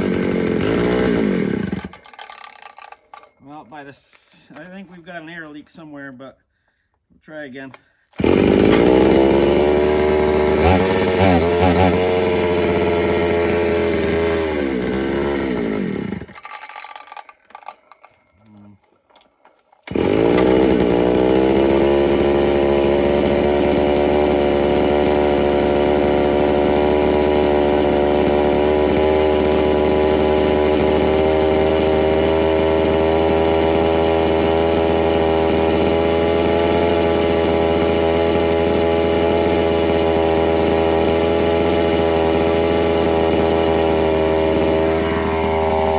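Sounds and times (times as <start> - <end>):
chainsaw engine revving: 0.0 - 3.3, 8.2 - 18.2, 19.6 - 45.9.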